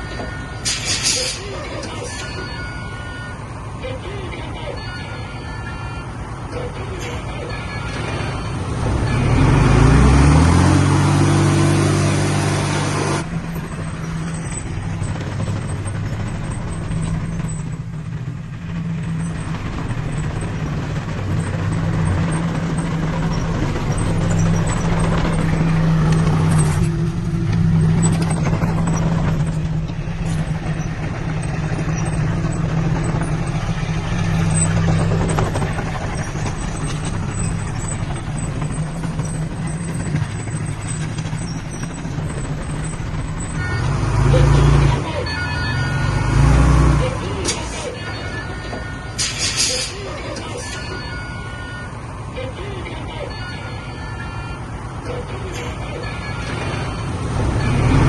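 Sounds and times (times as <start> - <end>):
heavy diesel engine revving: 8.1 - 48.1, 54.8 - 58.0.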